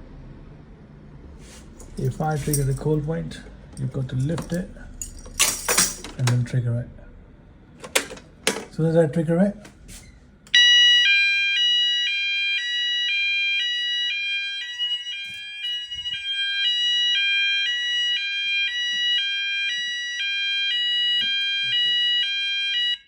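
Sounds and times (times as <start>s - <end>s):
two-tone fire alarm: 10.5s - 23.0s.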